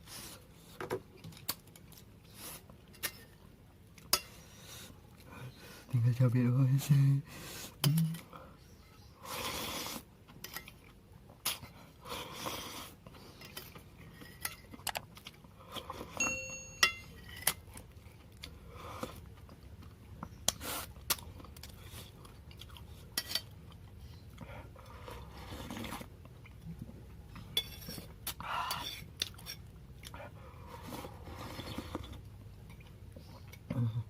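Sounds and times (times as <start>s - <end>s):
chewing: 9.4s - 16.2s, 17.3s - 33.9s
strike ringing on bowl: 16.2s - 17.1s
spoon and fork clinking on bowl: 16.2s - 17.5s.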